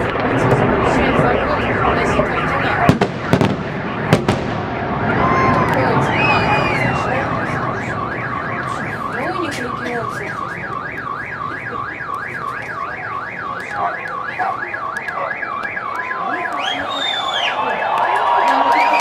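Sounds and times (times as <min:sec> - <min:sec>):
car alarm warbling: 0:00.3 - 0:18.2
faint scattered pops: 0:09.5 - 0:16.8.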